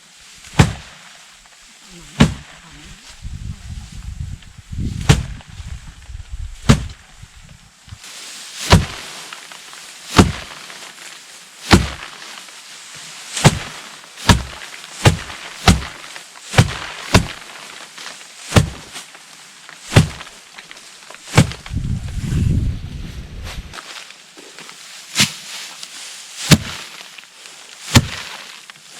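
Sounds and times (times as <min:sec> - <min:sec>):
short low rumble: 0:21.6 - 0:23.8.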